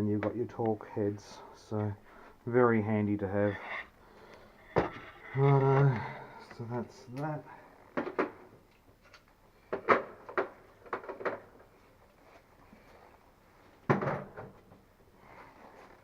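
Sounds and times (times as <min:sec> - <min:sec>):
hard objects clicking and knocking: 0:07.9 - 0:11.6.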